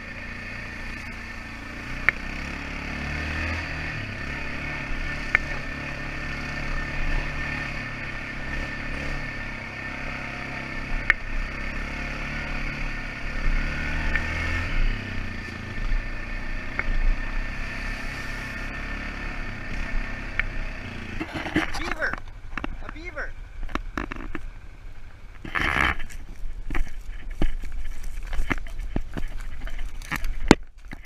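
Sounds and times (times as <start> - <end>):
atv engine revving: 0.0 - 31.0.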